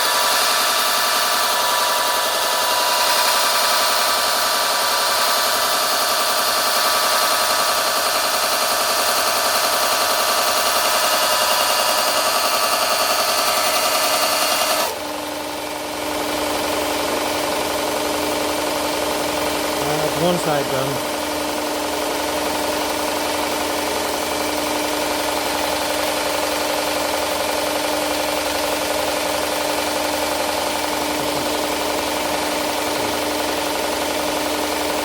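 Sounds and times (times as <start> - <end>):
grinder running free: 0.0 - 15.0.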